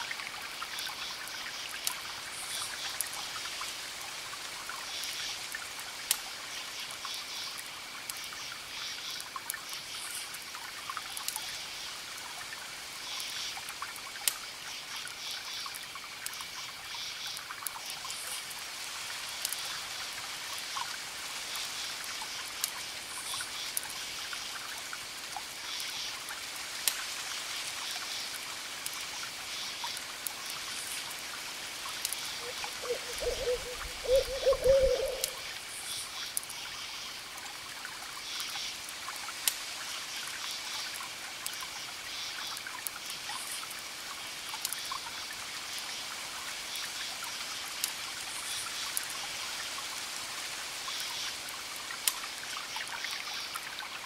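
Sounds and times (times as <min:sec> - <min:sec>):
trickling water or rain: 0:00.0 - 0:54.0
crackling wood fire: 0:05.4 - 0:08.4, 0:12.2 - 0:34.3, 0:37.2 - 0:42.1, 0:42.8 - 0:45.3, 0:46.6 - 0:52.5
owl hooting: 0:32.4 - 0:35.4.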